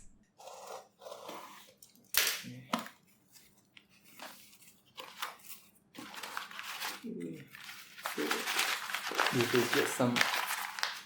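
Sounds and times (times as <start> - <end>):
packaging tearing: 6.0 - 11.0.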